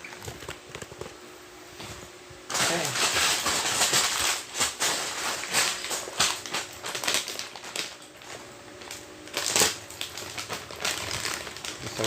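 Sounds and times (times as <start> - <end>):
plastic bags crinkling: 2.5 - 12.0.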